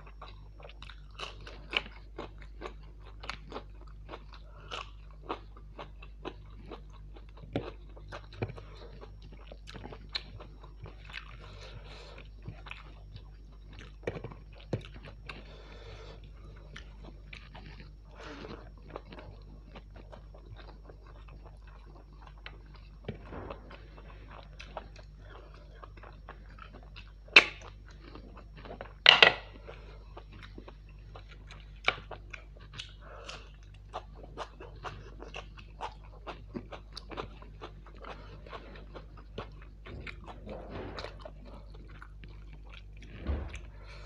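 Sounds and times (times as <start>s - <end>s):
person chewing food: 0.0s - 44.0s
low hum: 22.7s - 26.7s, 43.0s - 44.0s.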